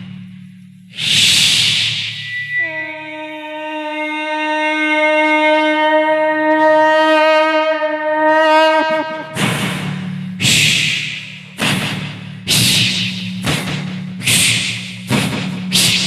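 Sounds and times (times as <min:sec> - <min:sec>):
man imitating a train whistle: 0:01.0 - 0:09.4.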